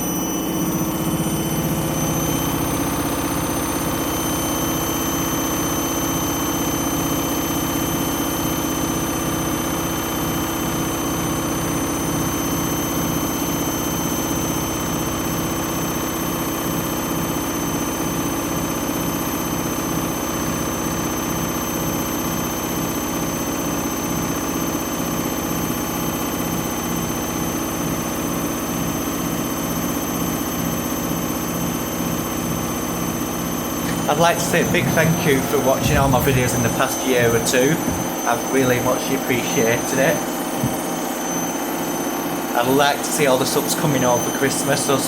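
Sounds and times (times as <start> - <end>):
washing machine spinning: 0.0 - 45.0
drum rumbling: 33.9 - 38.2.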